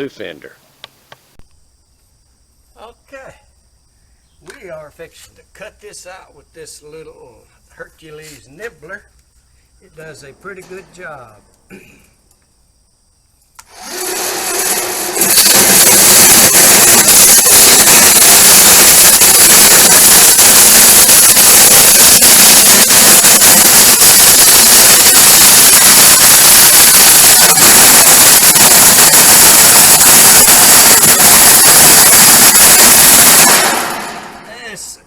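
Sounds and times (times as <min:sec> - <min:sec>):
electric nibbler cutting sheet steel: 0:13.6 - 0:34.0.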